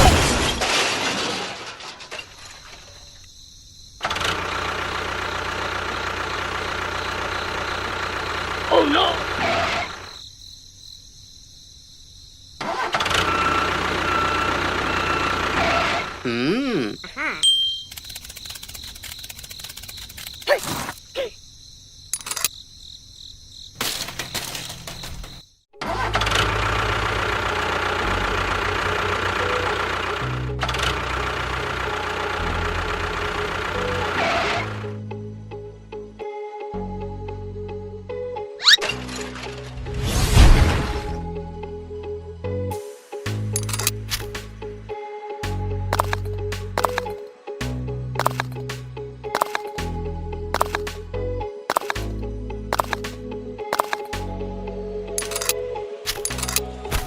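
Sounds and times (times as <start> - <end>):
small engine running: 4.0 - 10.1, 12.6 - 16.2, 17.9 - 20.5, 25.8 - 35.0, 52.7 - 53.1
clicks and clatter: 17.8 - 20.5, 43.6 - 44.4, 45.9 - 47.2, 48.2 - 48.6, 49.4 - 49.8, 50.6 - 51.0, 51.7 - 52.0, 52.7 - 54.1, 55.2 - 57.0
short squeaks: 38.6 - 39.6.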